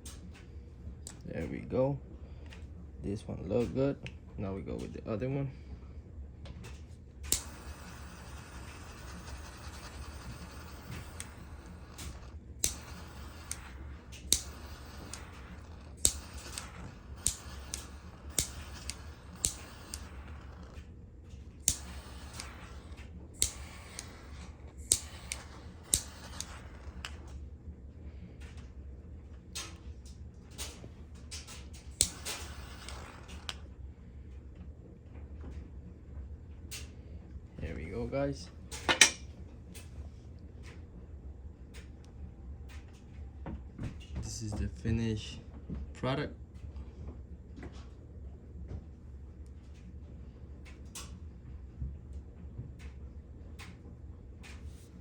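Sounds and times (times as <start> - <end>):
steady low hum: 0.0 - 55.0
lighter clicking: 7.3 - 20.8, 21.6 - 27.3, 32.0 - 33.6.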